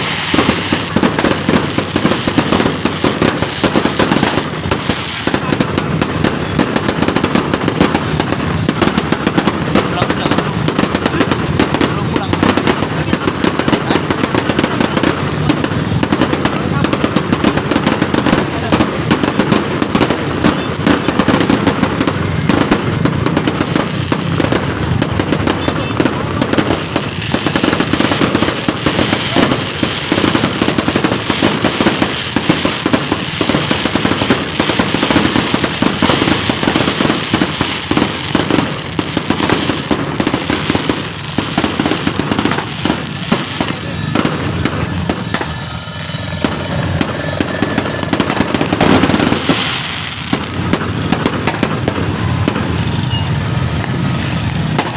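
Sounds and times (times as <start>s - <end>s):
fireworks bangs and crackles: 0.0s - 54.9s.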